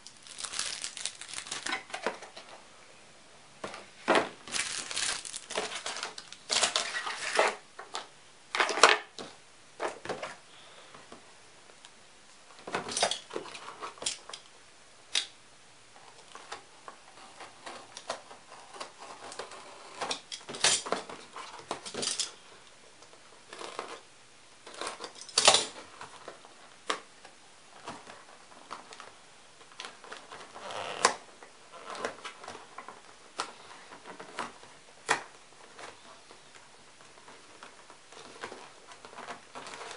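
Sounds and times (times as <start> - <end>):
packaging rustling: 0.0 - 2.5, 4.1 - 7.6.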